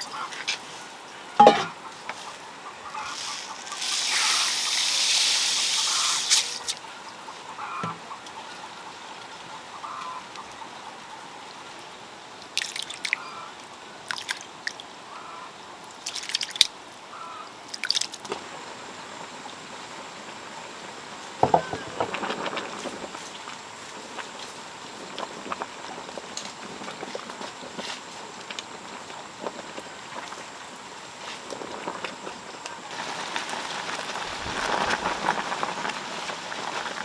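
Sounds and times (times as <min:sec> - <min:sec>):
water pouring: 0:12.6 - 0:13.2.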